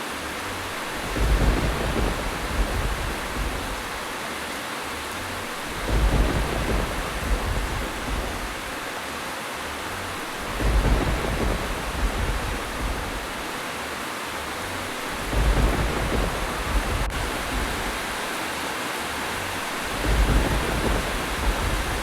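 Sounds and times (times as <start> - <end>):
heavy rain: 0.0 - 22.0
low thunder rumbles: 0.6 - 4.2, 5.3 - 9.0, 9.8 - 13.6, 14.6 - 18.4, 19.6 - 22.0.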